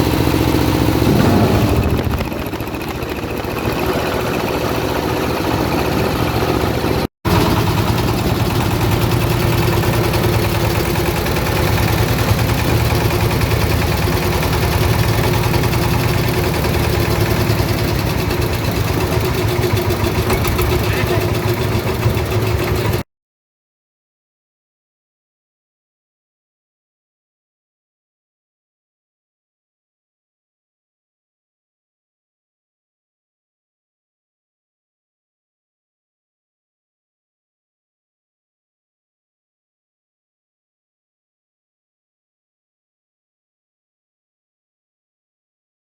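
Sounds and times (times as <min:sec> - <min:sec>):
grinding machine humming: 0:00.0 - 0:23.0.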